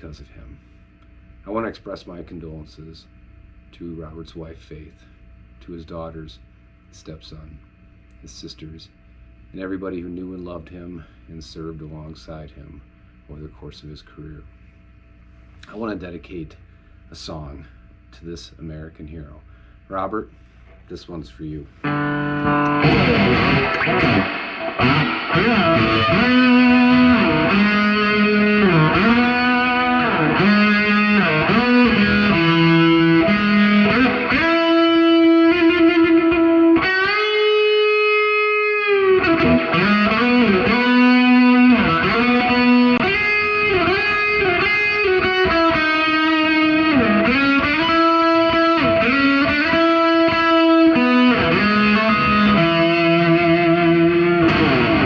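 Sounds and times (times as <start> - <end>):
distorted electric guitar melody: 21.8 - 55.0.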